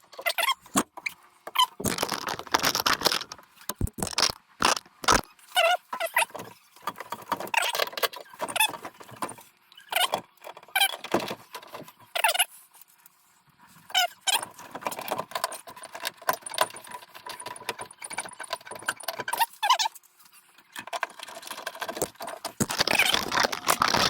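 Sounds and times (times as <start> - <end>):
short squeaks: 9.4 - 11.0, 22.6 - 24.0.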